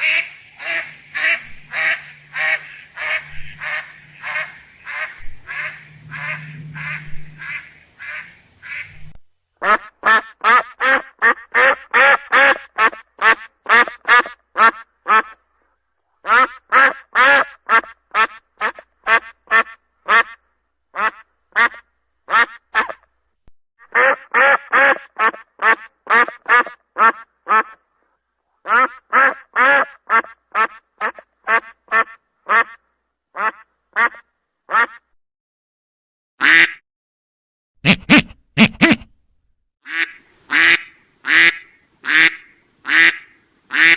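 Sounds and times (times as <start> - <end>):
duck calls: 0.0 - 9.0, 9.6 - 15.4, 16.2 - 20.4, 21.0 - 23.0, 23.9 - 27.8, 28.6 - 32.8, 33.4 - 35.0, 36.4 - 36.8, 37.8 - 39.1, 39.9 - 43.9
rapid duck quacks: 0.0 - 9.0, 9.6 - 15.4, 16.2 - 20.4, 21.0 - 23.0, 23.8 - 27.8, 28.6 - 32.8, 33.4 - 35.0, 36.4 - 36.8, 37.8 - 39.1, 39.9 - 43.9
low hum: 3.2 - 9.2.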